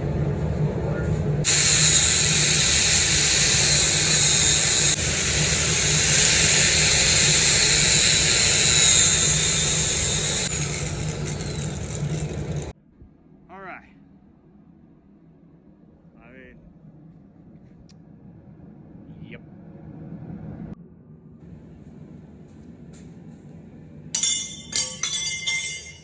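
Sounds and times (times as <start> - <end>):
welding arc frying hiss: 1.5 - 12.3.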